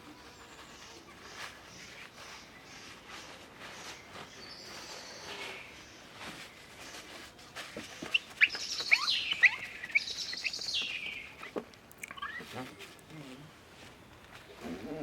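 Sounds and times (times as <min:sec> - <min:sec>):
songbird chirping and trilling: 0:00.2 - 0:13.6.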